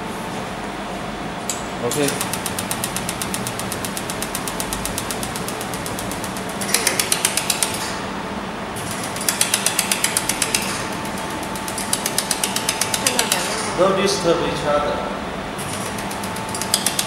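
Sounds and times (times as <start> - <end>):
steady machine hum: 0.0 - 17.0
fast even machine clicking: 1.8 - 8.0, 8.8 - 13.6, 15.6 - 17.0.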